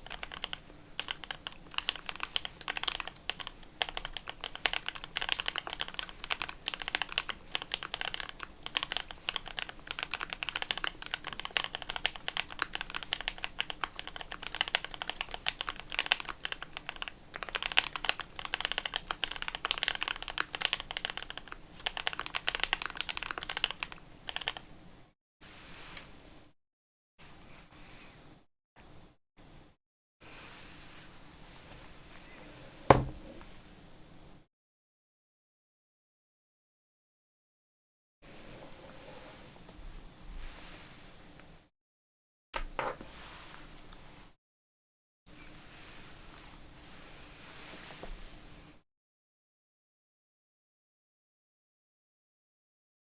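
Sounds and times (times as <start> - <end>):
mechanical keyboard typing: 0.0 - 24.6.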